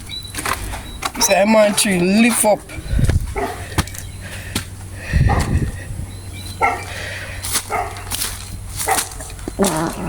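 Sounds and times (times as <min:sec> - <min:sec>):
low rumble: 0:02.6 - 0:06.4
dog barking: 0:03.4 - 0:03.7, 0:05.2 - 0:05.6, 0:06.6 - 0:06.9, 0:07.7 - 0:08.0, 0:08.8 - 0:09.2.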